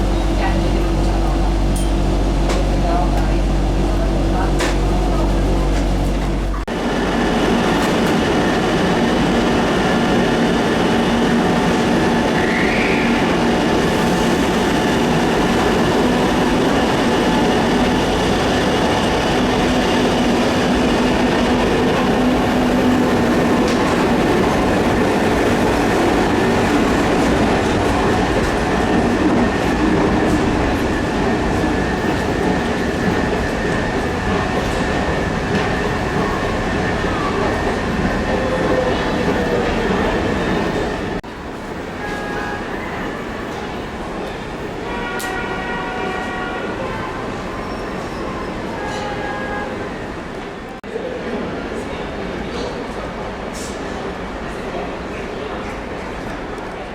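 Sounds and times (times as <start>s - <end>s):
train wheels on rails: 0.0s - 46.6s.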